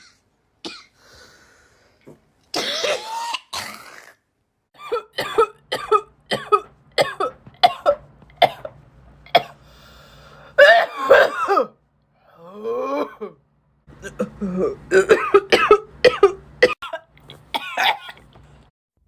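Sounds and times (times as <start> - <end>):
person coughing: 2.5 - 4.1, 4.8 - 9.6, 10.5 - 11.8, 14.0 - 18.2.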